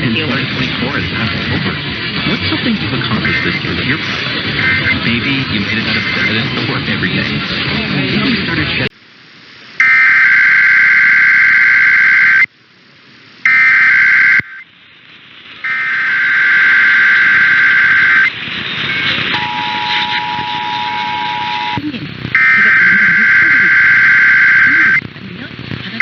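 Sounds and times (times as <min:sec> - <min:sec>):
raspy digital data tones: 0:15.6 - 0:21.8
two-tone alert signal: 0:19.4 - 0:21.8.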